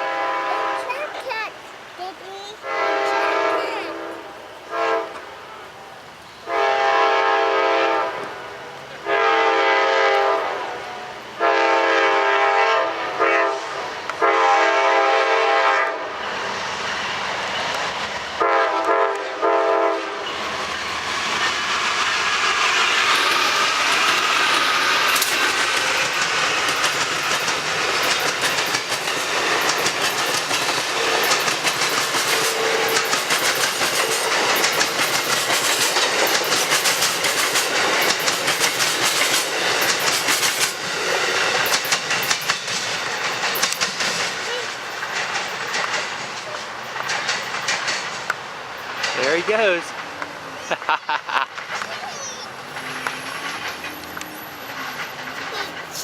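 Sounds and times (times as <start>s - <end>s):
train passing with loud rush: 0.0s - 56.0s
multi-chime train air horn: 6.4s - 8.2s, 9.0s - 16.1s, 18.4s - 20.4s
wheels clacking over rail joints: 14.0s - 56.0s.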